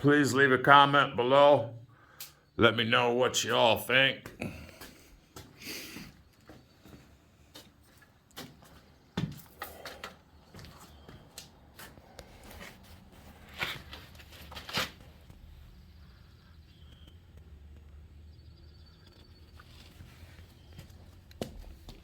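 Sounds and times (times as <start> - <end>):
rustling close to microphone: 11.8 - 15.4.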